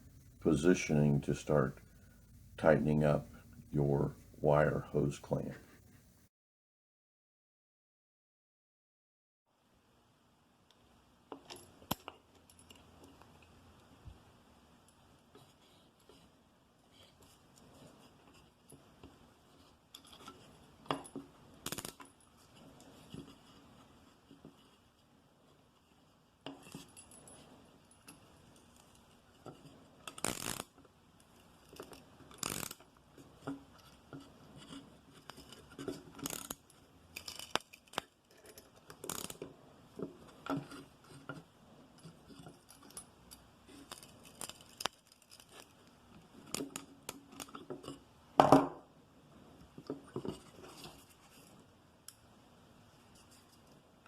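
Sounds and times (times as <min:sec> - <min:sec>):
metallic clicks and clinks: 0:35.3 - 0:39.4, 0:42.0 - 0:45.7.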